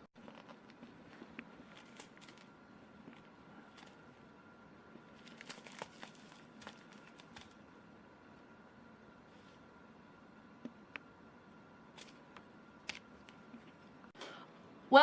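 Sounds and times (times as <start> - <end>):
crinkly toy rustling: 0.2 - 4.0, 5.1 - 7.6.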